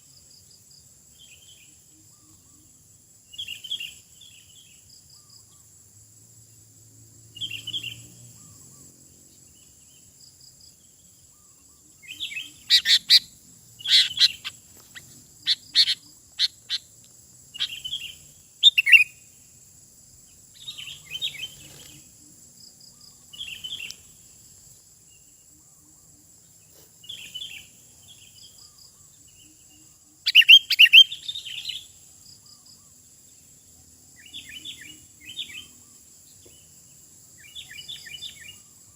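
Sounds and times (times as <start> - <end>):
bird chirping: 7.3 - 19.3, 20.2 - 38.9.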